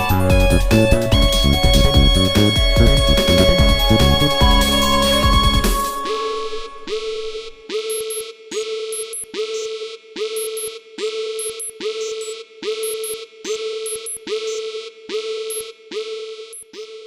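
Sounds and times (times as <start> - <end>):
synthesized swooping alert tone: 2.8 - 7.6.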